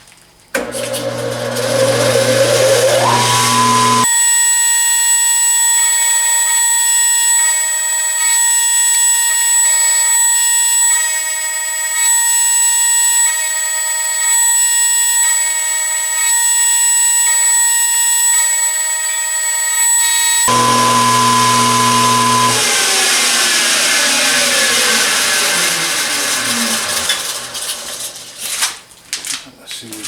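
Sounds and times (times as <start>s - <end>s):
high-pitched machine whine: 1.8s - 4.1s, 19.9s - 28.7s
lower tone cutting in and out: 1.8s - 4.1s, 20.5s - 28.7s.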